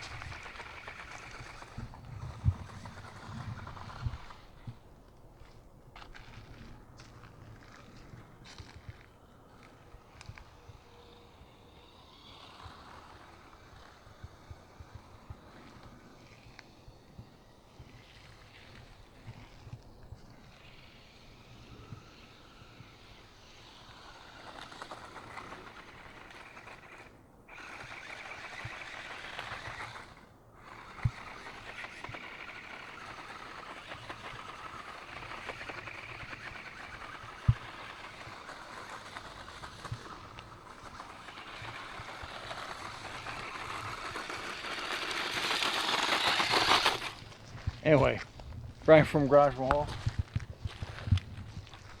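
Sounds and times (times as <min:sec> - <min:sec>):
toy truck motor whirring: 0:00.0 - 0:52.0.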